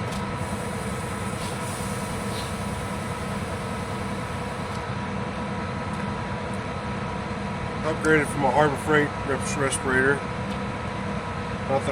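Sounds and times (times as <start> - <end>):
tractor engine running: 0.0 - 5.4
faint steady whine: 0.4 - 4.9.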